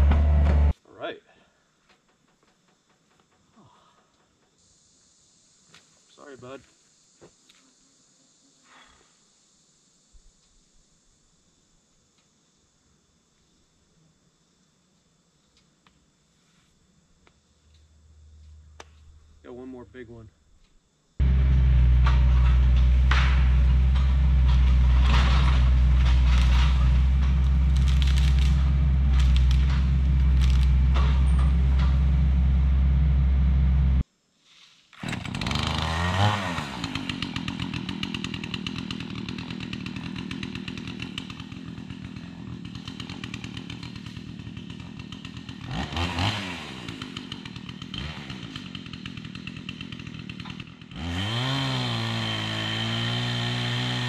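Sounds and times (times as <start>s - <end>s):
diesel engine running under load: 0.0s - 0.7s, 21.2s - 34.0s
sharp cracks: 21.2s - 32.2s
small engine revving: 21.2s - 34.0s, 35.0s - 54.0s.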